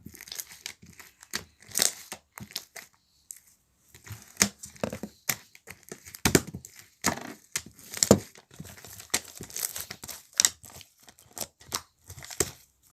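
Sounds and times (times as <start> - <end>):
crinkling and crumpling: 0.0 - 12.9.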